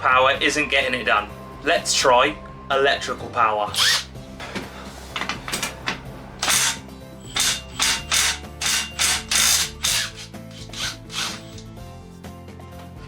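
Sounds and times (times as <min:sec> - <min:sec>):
electric power tool bursts: 0:03.7 - 0:04.6, 0:05.2 - 0:11.7.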